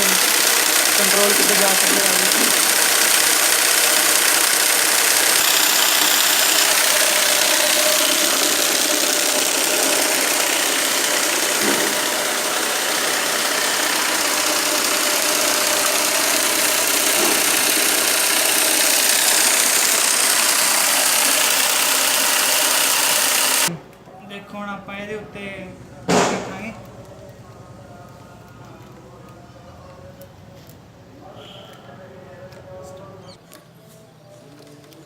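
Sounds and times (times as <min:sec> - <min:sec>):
electric motor whirring: 0:00.0 - 0:23.7.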